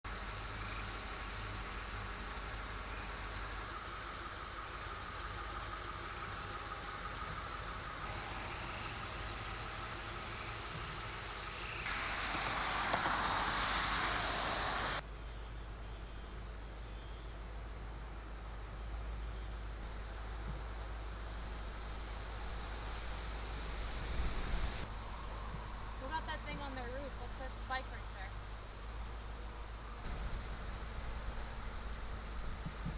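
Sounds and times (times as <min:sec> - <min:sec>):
low rumble and hiss: 0:00.0 - 0:32.9
loud rushing noise: 0:11.4 - 0:15.0.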